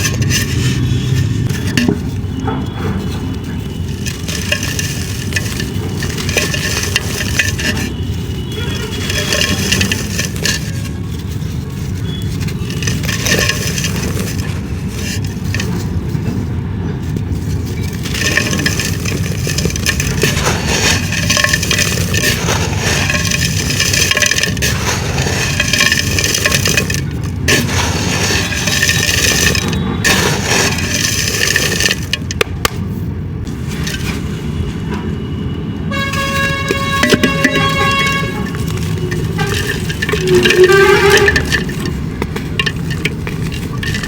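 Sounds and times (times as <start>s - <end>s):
dried clay crumbling by hand: 0.0s - 16.4s.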